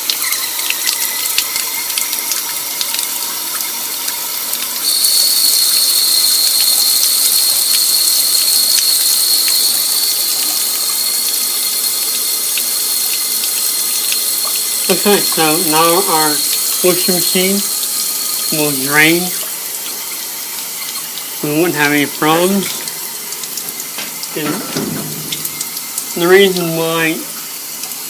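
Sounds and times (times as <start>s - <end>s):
water flowing down a drain: 0.0s - 28.0s
thin high whistle: 4.8s - 12.1s.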